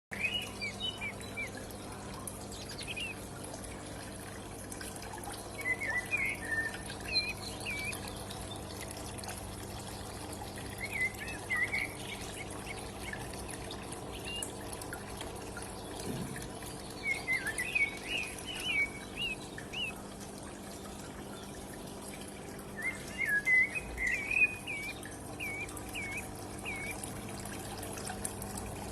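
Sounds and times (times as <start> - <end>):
constant low hum: 0.1 - 28.9
water trickling: 0.1 - 28.9
small bird chirping: 17.0 - 20.0, 22.8 - 27.0.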